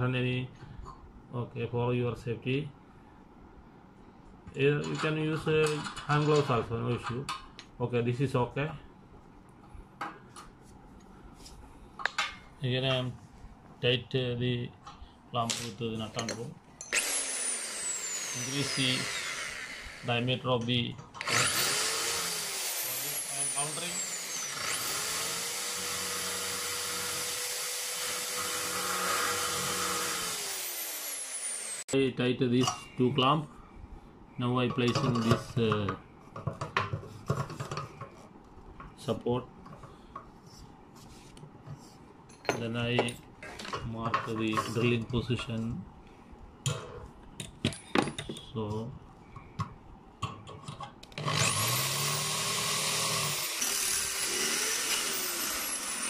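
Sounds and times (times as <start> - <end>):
electric drill boring into steel: 16.8 - 20.2, 21.2 - 31.9, 51.2 - 56.0.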